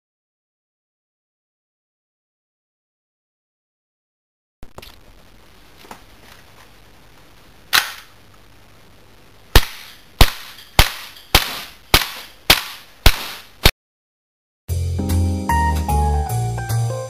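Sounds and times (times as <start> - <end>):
airsoft pistol shots: 7.7 - 8.1, 9.5 - 13.7.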